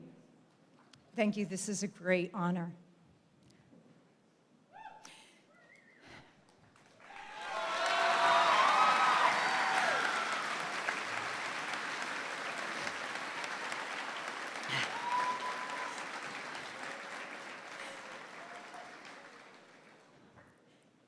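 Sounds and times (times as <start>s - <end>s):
audience applauding: 6.7s - 20.4s
faint crowd shouts: 7.1s - 10.8s, 14.7s - 16.0s.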